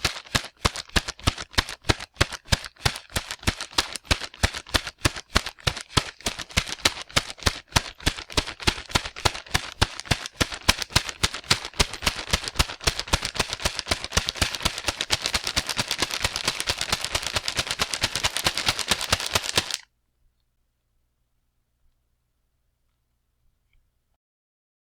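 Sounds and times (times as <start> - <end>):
man's running footsteps: 0.0 - 19.8.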